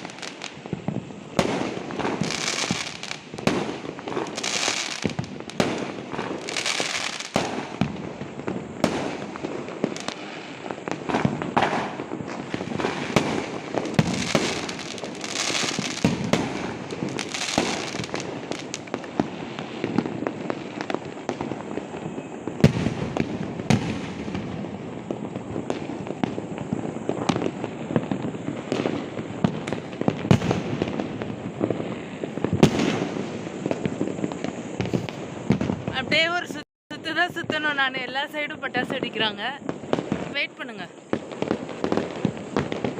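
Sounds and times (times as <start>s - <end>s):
crackling: 0.0s - 21.8s
hissing bursts of crackle: 0.0s - 36.6s, 37.3s - 42.9s
firecrackers banging and popping: 0.0s - 42.9s.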